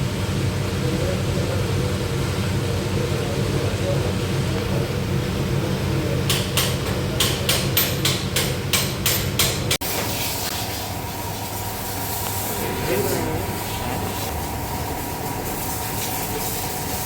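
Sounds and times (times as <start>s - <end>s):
low workshop hum: 0.0s - 17.0s
hammer strikes: 6.3s - 9.8s.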